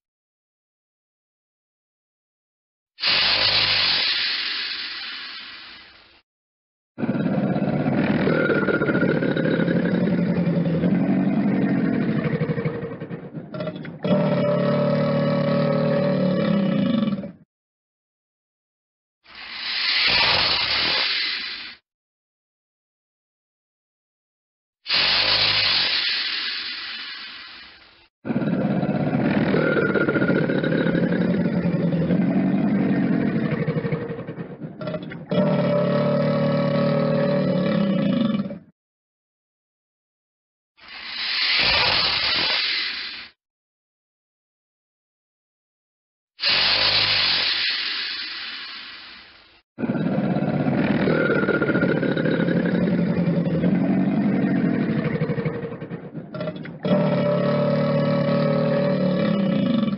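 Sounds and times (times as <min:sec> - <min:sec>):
crocodile growling: 0:07.0 - 0:17.4, 0:28.2 - 0:38.7, 0:49.8 - 0:59.9.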